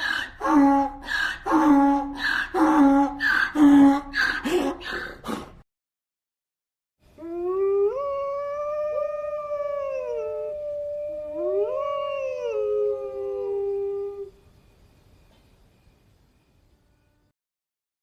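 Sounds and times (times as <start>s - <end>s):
dog howling: 7.2s - 14.3s.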